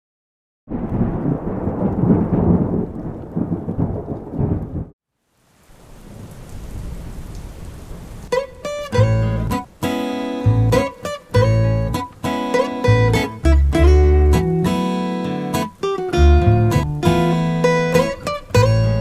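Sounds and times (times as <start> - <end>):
thunder rumble: 0.7 - 5.0, 5.9 - 8.4, 15.9 - 19.0
rain hissing: 0.7 - 19.0
acoustic guitar notes: 8.3 - 19.0.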